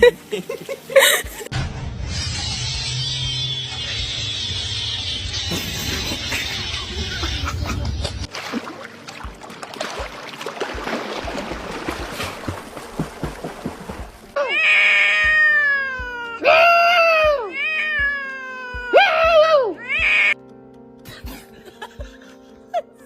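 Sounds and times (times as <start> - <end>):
cat meowing loudly: 14.4 - 20.4.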